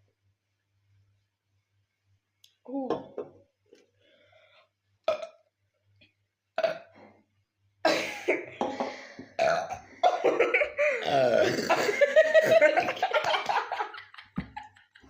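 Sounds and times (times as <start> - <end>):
people burping: 5.1 - 5.4, 6.6 - 7.0, 7.9 - 13.4.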